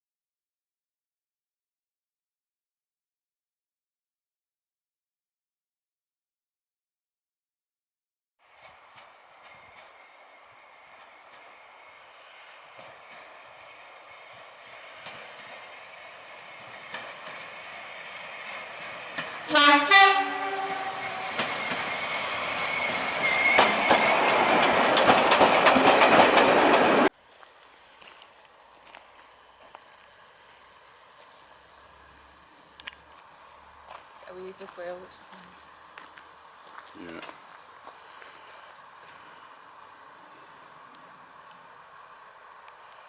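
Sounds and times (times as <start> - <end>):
train running noise: 8.4 - 43.0
train horn: 19.5 - 21.5
wheels clicking over rail joints: 22.9 - 29.0.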